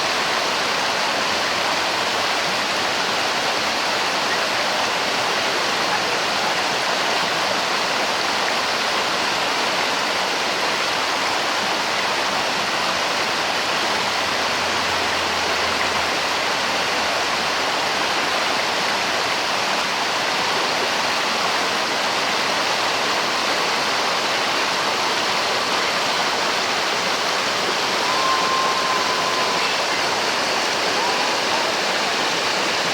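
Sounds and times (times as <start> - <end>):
creek water rushing: 0.0 - 32.9
faint whistle-like tone: 26.0 - 32.9.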